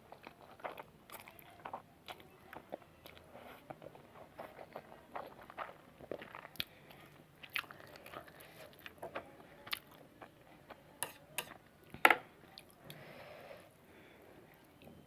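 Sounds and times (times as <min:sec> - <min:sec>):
person chewing noodles: 0:00.0 - 0:09.0.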